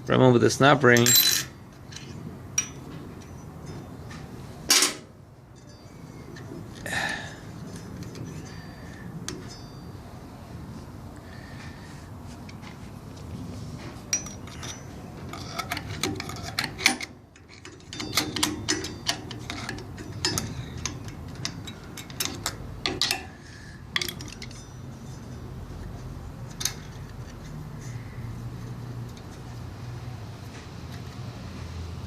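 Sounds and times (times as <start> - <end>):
metal tools clicking and scraping: 0.9 - 6.9, 7.6 - 10.0, 14.0 - 30.0.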